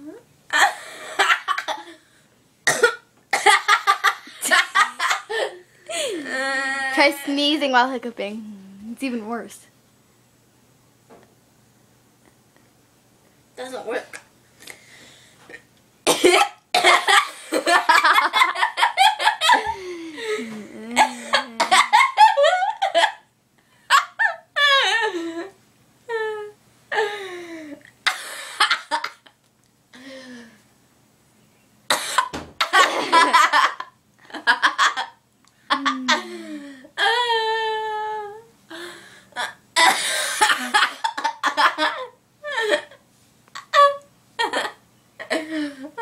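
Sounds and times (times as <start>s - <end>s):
woman laughing: 3.8s - 6.3s, 17.0s - 23.2s, 35.7s - 38.4s
woman hiccuping: 20.6s - 22.0s.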